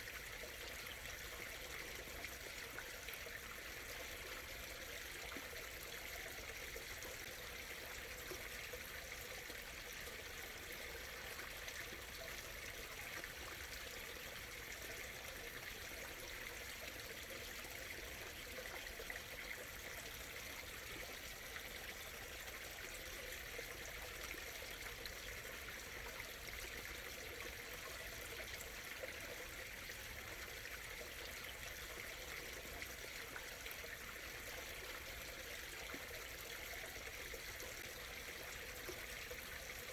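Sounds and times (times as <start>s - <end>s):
stream trickling over stones: 0.0s - 39.9s.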